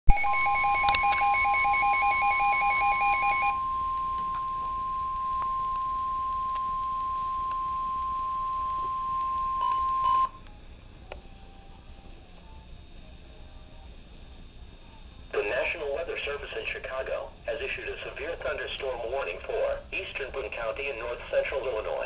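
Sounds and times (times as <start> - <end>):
steady alarm tone: 0.1 - 10.4
faint radio hiss: 0.2 - 22.0.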